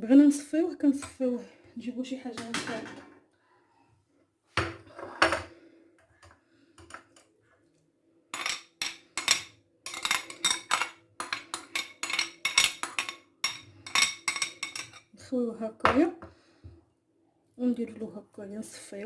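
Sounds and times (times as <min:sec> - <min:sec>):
dishes and utensils clinking: 0:08.3 - 0:15.1.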